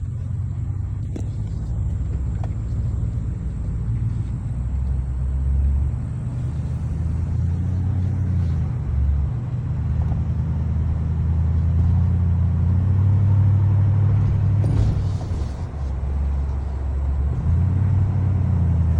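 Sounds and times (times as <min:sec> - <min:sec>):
continuous low vehicle noise: 0:00.0 - 0:18.9
pickup truck driving: 0:00.0 - 0:18.9.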